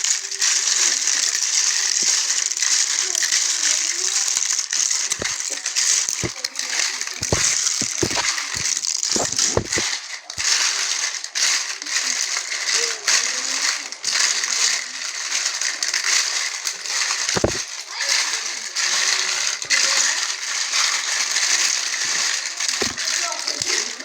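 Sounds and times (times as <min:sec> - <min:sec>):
crunching and rattling clatter: 0:04.0 - 0:24.0
heavy thump: 0:07.2 - 0:09.8, 0:17.4 - 0:17.6.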